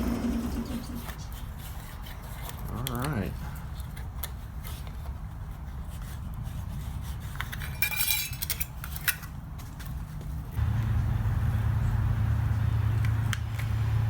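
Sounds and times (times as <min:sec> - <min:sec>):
low steady hum: 0:10.6 - 0:14.0.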